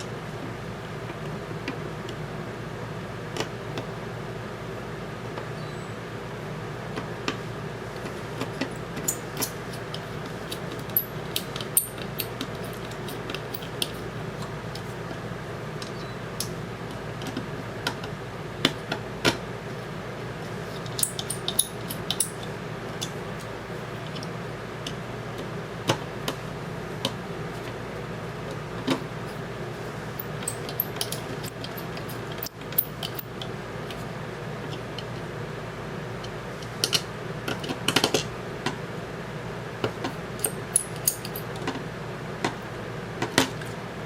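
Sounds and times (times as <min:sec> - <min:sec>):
steady low hum: 0:00.0 - 0:44.0
small parts clicking and tapping: 0:08.4 - 0:14.0, 0:20.8 - 0:23.2, 0:30.2 - 0:34.0, 0:40.4 - 0:41.8.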